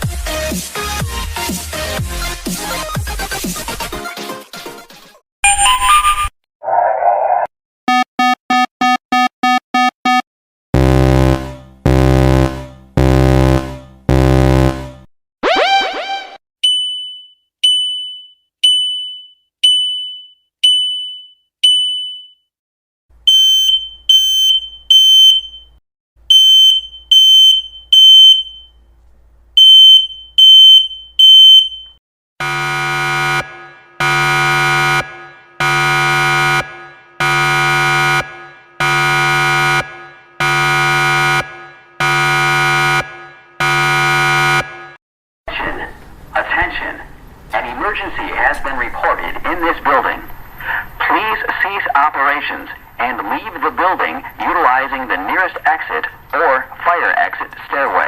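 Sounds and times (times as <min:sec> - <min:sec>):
high electronic alarm beeps: 0:05.4 - 0:06.3, 0:15.5 - 0:22.5, 0:23.3 - 0:25.7, 0:26.3 - 0:28.7, 0:29.6 - 0:45.0
harsh low buzzer pulses: 0:10.8 - 0:15.1, 0:32.4 - 0:45.0.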